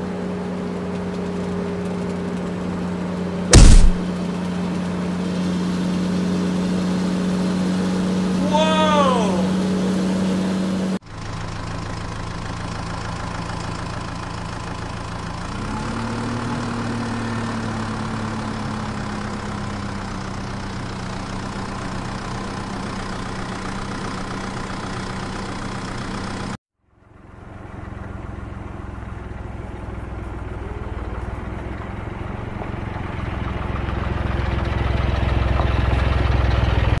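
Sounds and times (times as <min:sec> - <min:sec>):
low engine rumble: 0:17.7 - 0:37.0.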